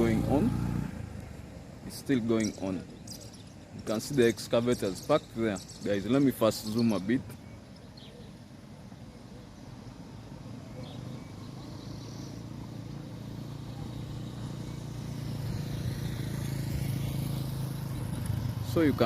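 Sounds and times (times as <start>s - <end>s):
vehicle engine approaching: 0.0s - 2.6s, 10.0s - 19.0s.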